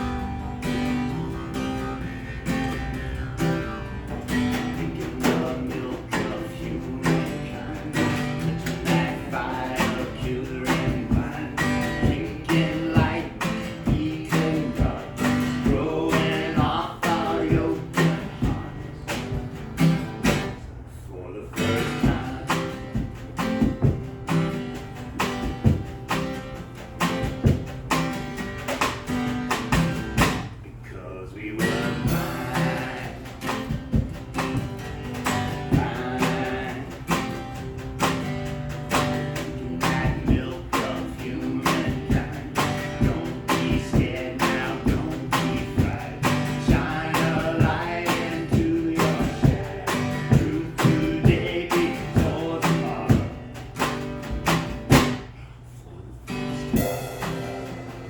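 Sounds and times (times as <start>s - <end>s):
guitar strumming: 0.0s - 20.8s, 21.6s - 30.6s, 31.6s - 55.4s, 56.3s - 58.0s
person singing: 31.6s - 33.8s.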